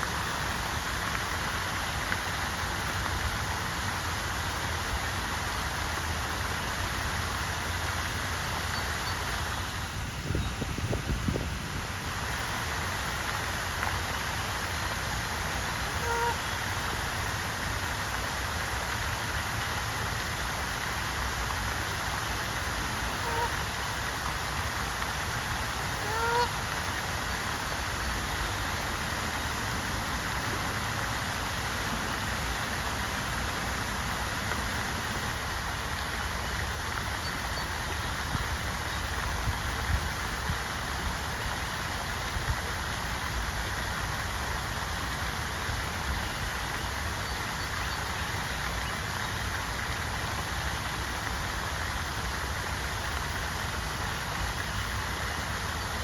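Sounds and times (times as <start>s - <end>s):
moving water hiss: 0.0s - 56.0s
wind: 0.0s - 56.0s
geese honking: 15.9s - 16.5s, 23.2s - 23.6s, 26.0s - 26.6s.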